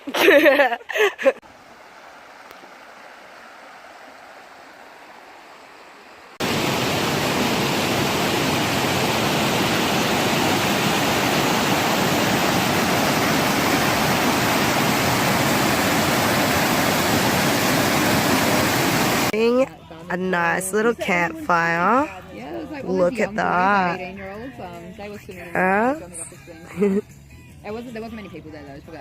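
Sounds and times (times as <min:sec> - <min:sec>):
waterfall rushing: 0:01.4 - 0:19.4.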